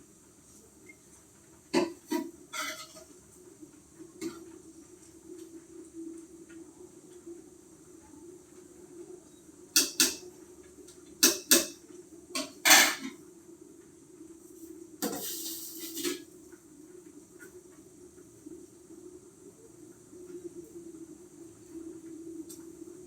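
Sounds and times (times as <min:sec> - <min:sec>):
kitchenware knocking and clattering: 0:01.8 - 0:03.0, 0:09.8 - 0:10.2, 0:11.2 - 0:11.8, 0:12.4 - 0:13.2
hiss: 0:15.0 - 0:16.2.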